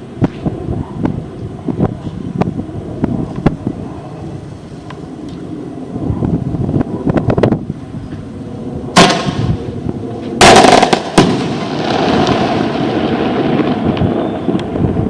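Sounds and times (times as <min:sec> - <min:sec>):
fireworks bangs: 0:08.9 - 0:09.6, 0:10.2 - 0:15.0.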